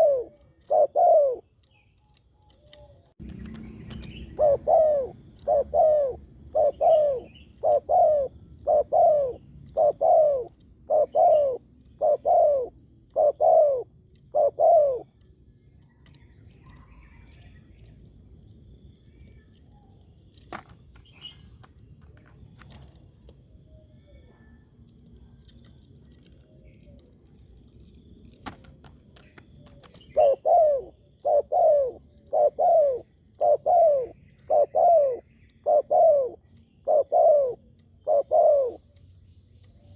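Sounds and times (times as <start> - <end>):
dove cooing: 0.0 - 1.6, 2.6 - 15.2, 28.5 - 39.0.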